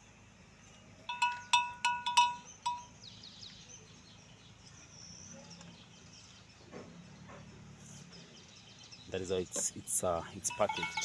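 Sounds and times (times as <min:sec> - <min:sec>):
small metal bell clanking: 0:01.1 - 0:02.9, 0:10.5 - 0:11.0.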